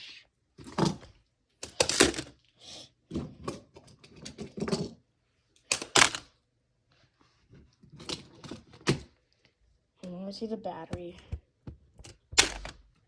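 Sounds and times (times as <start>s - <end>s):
plastic tiles clicking and clattering: 5.7s - 6.3s, 12.0s - 12.8s.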